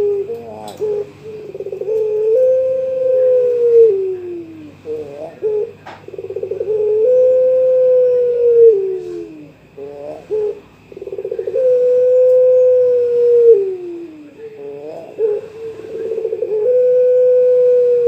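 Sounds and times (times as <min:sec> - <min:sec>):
dove cooing: 0:00.0 - 0:18.0.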